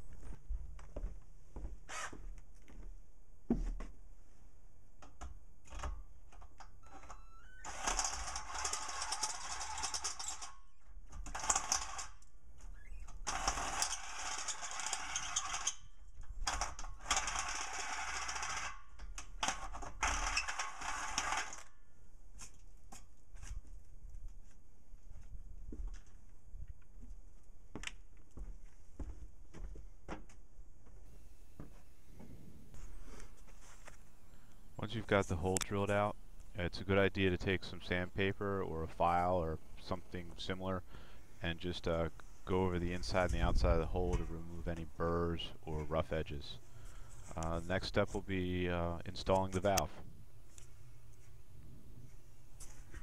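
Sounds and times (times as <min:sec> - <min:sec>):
power drill cutting metal: 0:06.8 - 0:10.5, 0:13.3 - 0:15.8, 0:17.0 - 0:18.8, 0:20.0 - 0:21.6.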